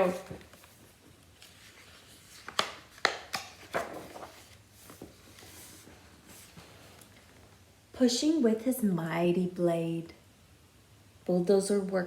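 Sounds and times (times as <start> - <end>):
book page turning: 0.0 - 7.3.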